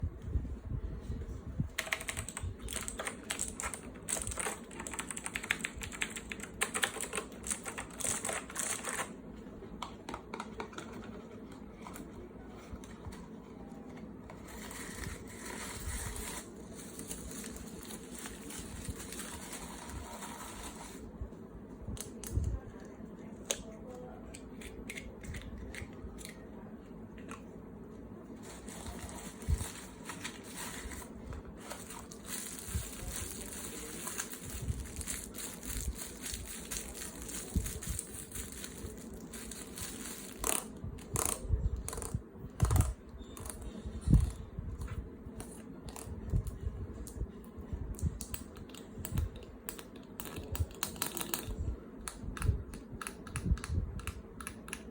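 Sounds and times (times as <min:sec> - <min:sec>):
rustling of craft materials: 0:10.1 - 0:21.1, 0:27.2 - 0:47.3.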